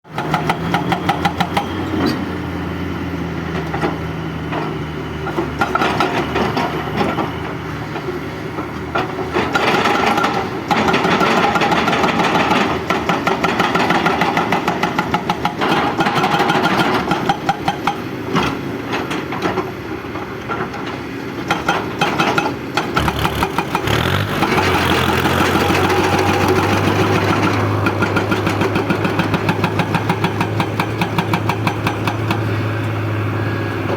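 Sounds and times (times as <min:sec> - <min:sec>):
excavator diesel engine revving: 0:00.1 - 0:08.0, 0:22.5 - 0:33.9.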